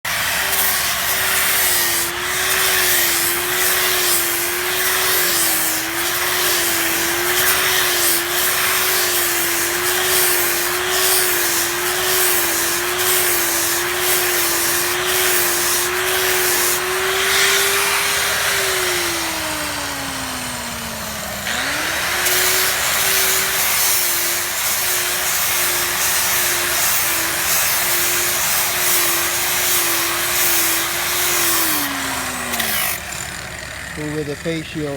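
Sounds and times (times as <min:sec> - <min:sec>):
power tool motor humming: 0:00.0 - 0:34.9
grinding and scraping on steel pipe: 0:00.1 - 0:19.6, 0:21.4 - 0:34.9.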